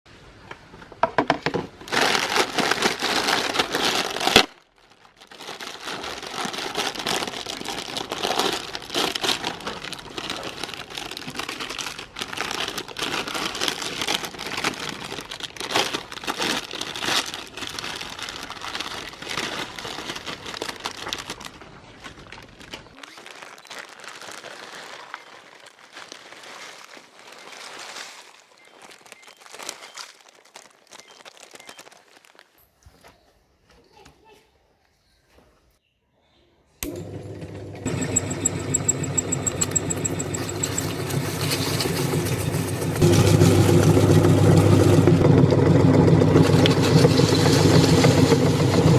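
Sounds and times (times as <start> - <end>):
meat grinder crunching: 1.9 - 21.6, 36.8 - 48.9.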